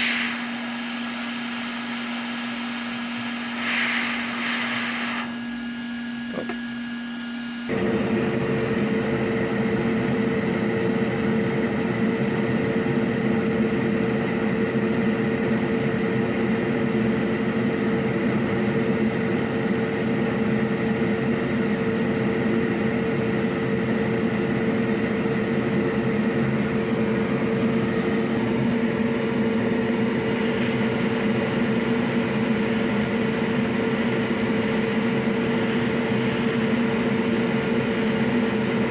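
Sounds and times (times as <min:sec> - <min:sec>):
electric blower whirring: 0:00.0 - 0:16.6, 0:24.6 - 0:38.9.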